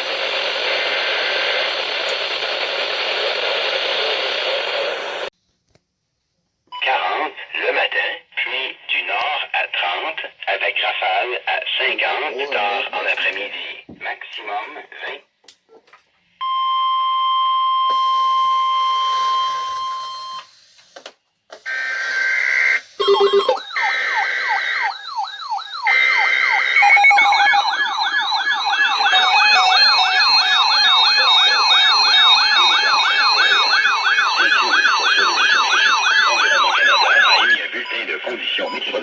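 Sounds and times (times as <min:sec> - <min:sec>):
steady electronic alarm tone: 0:21.7 - 0:37.6
warbling siren-like alert signal: 0:22.3 - 0:37.6.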